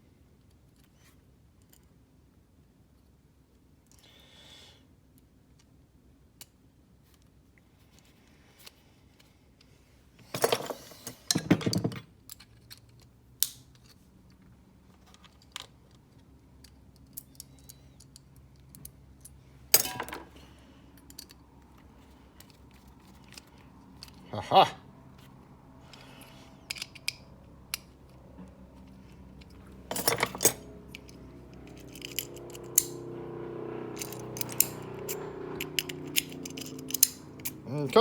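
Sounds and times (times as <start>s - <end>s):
keys and lock clicking: 21.0s - 21.4s, 25.8s - 28.2s, 28.8s - 33.0s, 33.9s - 37.6s
keys clinking: 25.8s - 27.9s, 28.8s - 33.0s, 33.9s - 37.6s.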